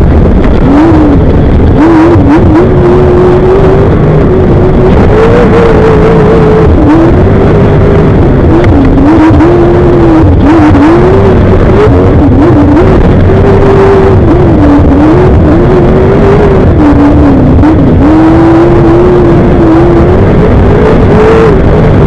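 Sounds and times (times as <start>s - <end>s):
race car engine revving: 0.0s - 22.0s.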